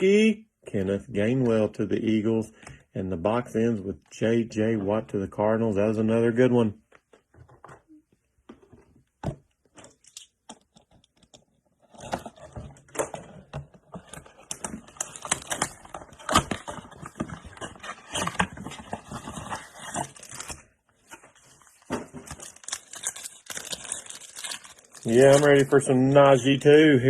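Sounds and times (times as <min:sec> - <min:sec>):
packaging crinkling and tearing: 0:14.0 - 0:20.7, 0:21.6 - 0:26.4.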